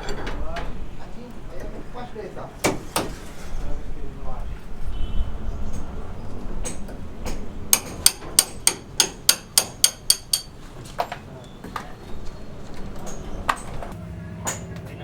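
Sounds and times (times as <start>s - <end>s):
sharp ringing hammer strikes: 7.8s - 10.5s.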